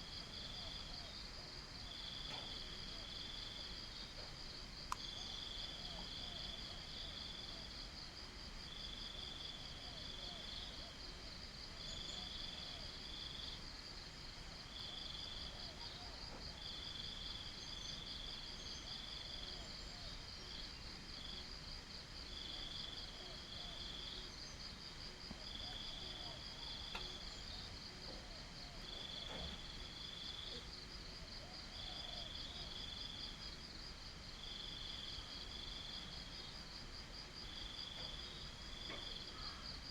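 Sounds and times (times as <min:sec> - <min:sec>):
cricket chirping in bursts: 0:00.0 - 0:39.9
cricket high continuous trill: 0:00.0 - 0:39.9.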